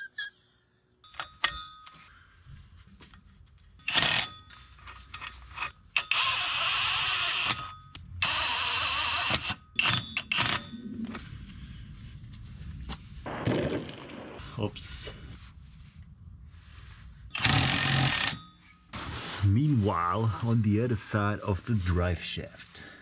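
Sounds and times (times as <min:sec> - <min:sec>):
metallic clinks of hand tools: 0:01.0 - 0:02.1
small power tool whirring: 0:03.8 - 0:04.4, 0:05.1 - 0:10.6, 0:17.4 - 0:18.4.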